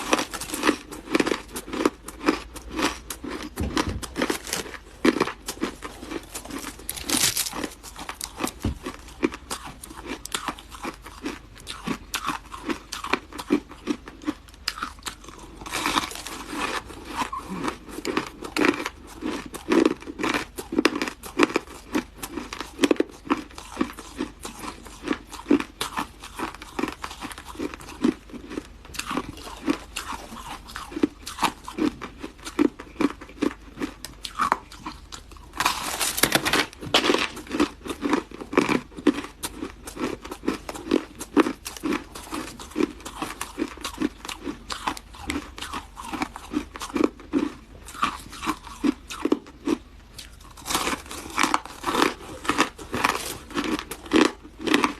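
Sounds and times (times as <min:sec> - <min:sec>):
crunching and chewing ice: 0:00.0 - 0:54.9.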